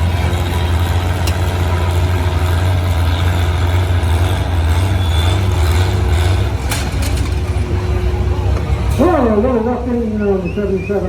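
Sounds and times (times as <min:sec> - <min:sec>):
tractor engine under load: 0:00.0 - 0:10.0.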